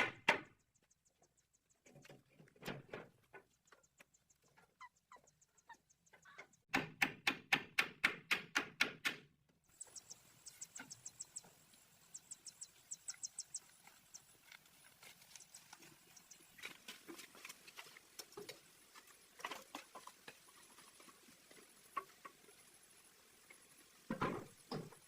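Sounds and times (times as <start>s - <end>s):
rapid sharp knocks: 6.7s - 9.2s.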